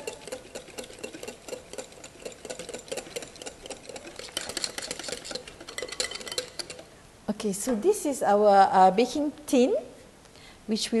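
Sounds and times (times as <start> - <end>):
utensil stirring batter in bowl: 0.0 - 7.0.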